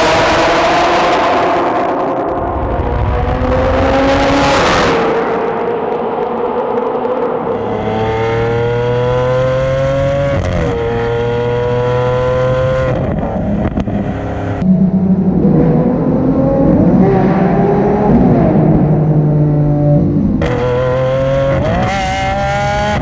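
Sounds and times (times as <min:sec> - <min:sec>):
sports car engine accelerating: 0:00.0 - 0:23.0
duller lower engine note: 0:13.4 - 0:21.0.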